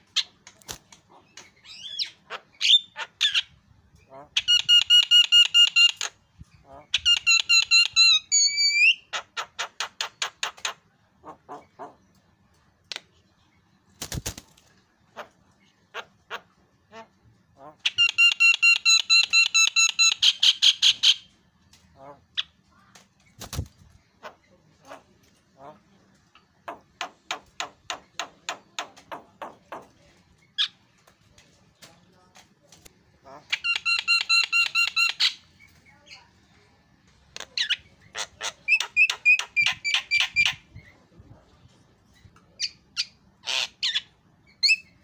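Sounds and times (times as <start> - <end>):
bird calling harsh notes: 4.3 - 6.2, 17.8 - 21.3, 33.4 - 35.5.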